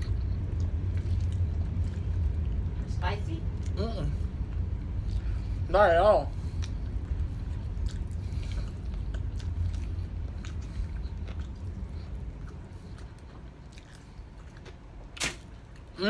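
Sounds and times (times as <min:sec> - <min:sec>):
chewing and biting: 0:00.0 - 0:02.6, 0:06.5 - 0:15.9
low rumble: 0:00.0 - 0:14.4.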